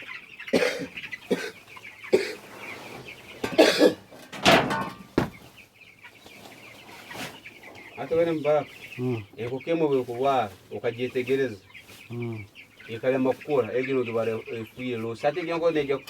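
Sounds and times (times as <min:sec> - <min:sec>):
chicks peeping: 0:00.0 - 0:16.0
chicken harsh coughs: 0:00.4 - 0:02.7, 0:03.4 - 0:04.2.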